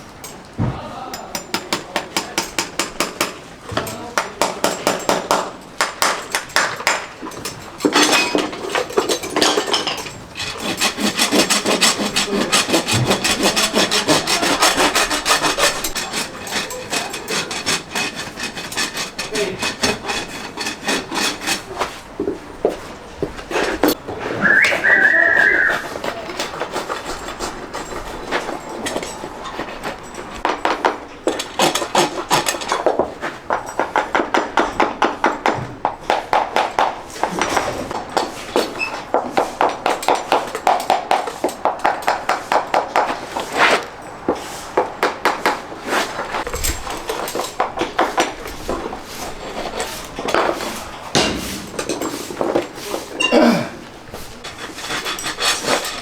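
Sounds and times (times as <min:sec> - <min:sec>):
rasp filing hoof: 0:07.2 - 0:53.3, 0:54.0 - 0:56.0
high whistle-like tone: 0:24.4 - 0:25.8.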